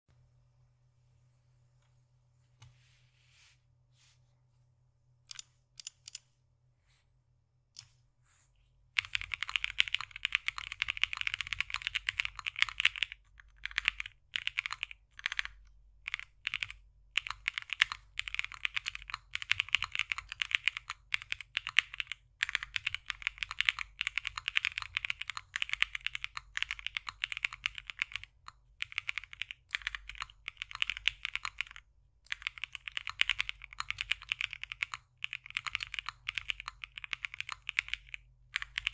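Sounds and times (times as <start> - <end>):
typing on mechanical keyboard: 9.0 - 38.9.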